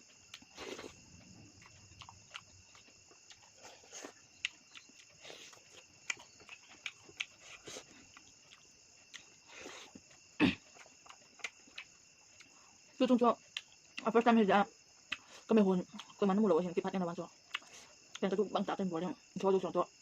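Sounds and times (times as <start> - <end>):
crickets chirring: 0.0 - 20.0
person chewing: 0.1 - 12.6, 15.1 - 16.2, 17.5 - 18.2.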